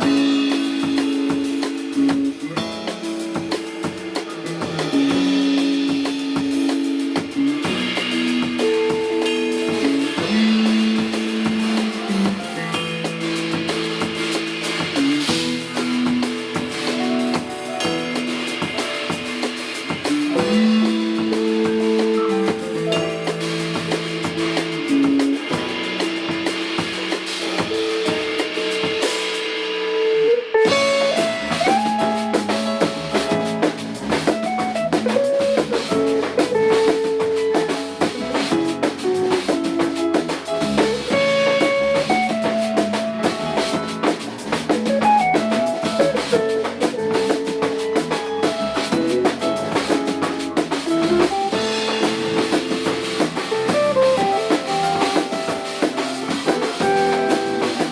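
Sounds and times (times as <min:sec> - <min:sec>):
drum kit: 0:00.0 - 0:57.9
instrumental rock band music: 0:00.0 - 0:57.9.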